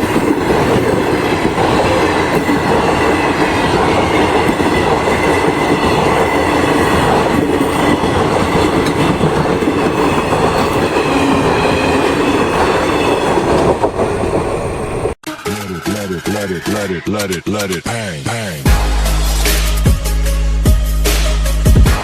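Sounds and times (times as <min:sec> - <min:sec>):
train wheels rumbling on rails: 0:00.0 - 0:15.2.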